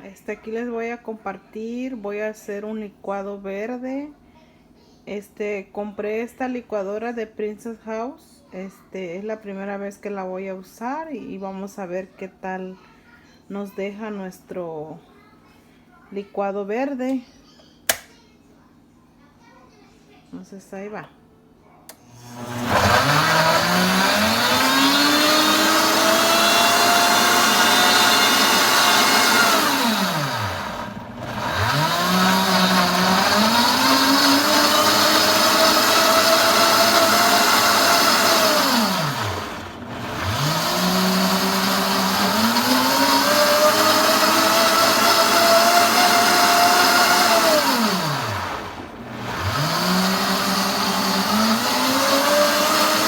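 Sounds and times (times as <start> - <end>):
blender motor pulsing: 21.9 - 53.0.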